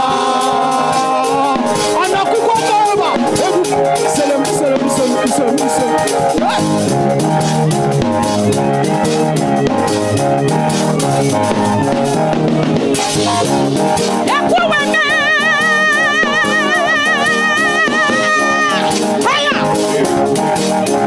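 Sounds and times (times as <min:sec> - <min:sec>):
live praise band music: 0:00.0 - 0:21.0.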